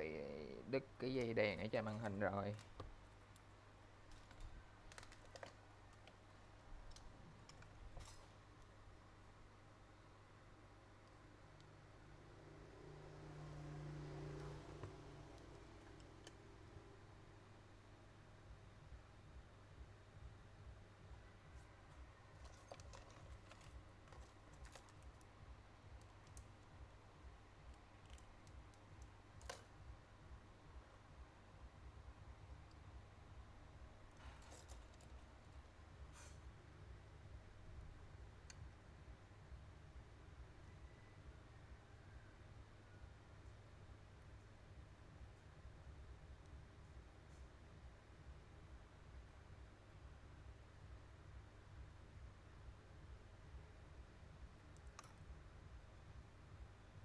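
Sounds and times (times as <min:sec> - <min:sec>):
low steady hum: 0:00.0 - 0:57.0
faint clicks and taps: 0:01.2 - 0:08.8, 0:21.5 - 0:30.0.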